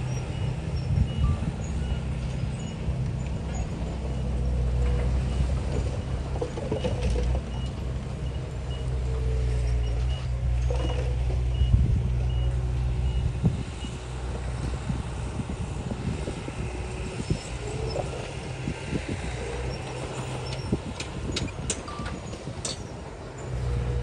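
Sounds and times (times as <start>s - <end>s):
diesel machinery engine: 0.0s - 24.0s
metal clanks and knocks: 20.5s - 22.9s.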